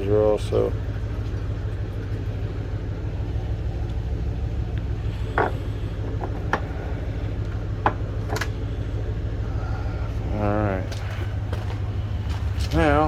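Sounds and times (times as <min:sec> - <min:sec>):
vehicle engine idling: 0:00.0 - 0:13.0
handling clicks and knocks: 0:07.4 - 0:08.6.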